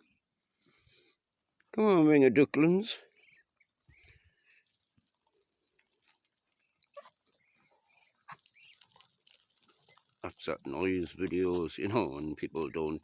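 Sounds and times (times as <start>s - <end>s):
ducklings pecking at food: 3.1s - 13.0s
ducklings peeping: 6.5s - 9.1s.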